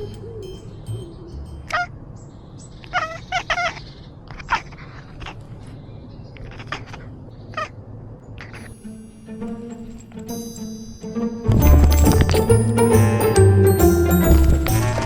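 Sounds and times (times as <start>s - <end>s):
short chirping calls: 0.0s - 3.0s.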